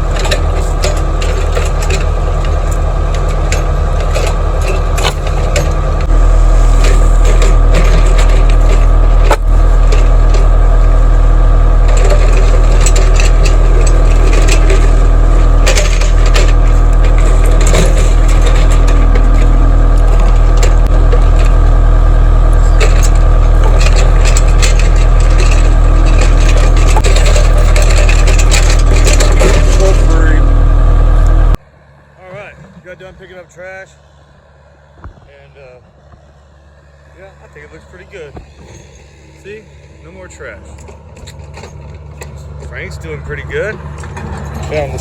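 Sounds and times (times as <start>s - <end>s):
machine knocks and rattles: 0.0s - 11.0s, 11.8s - 21.7s, 22.5s - 30.4s
diesel engine running: 0.0s - 45.0s.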